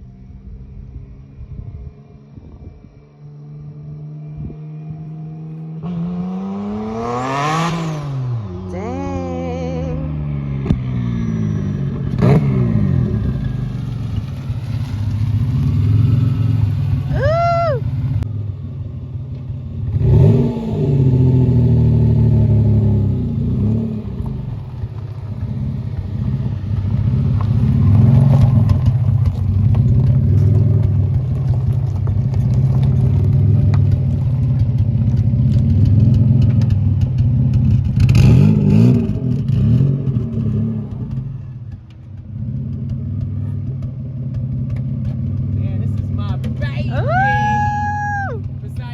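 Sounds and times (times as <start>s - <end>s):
car engine revving: 1.8s - 47.7s.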